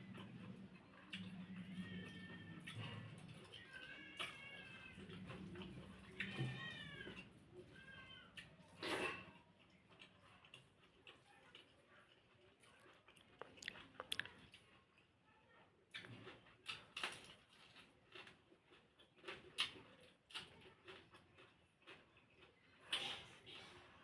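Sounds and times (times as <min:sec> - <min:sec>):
cat meowing: 0:01.6 - 0:08.5.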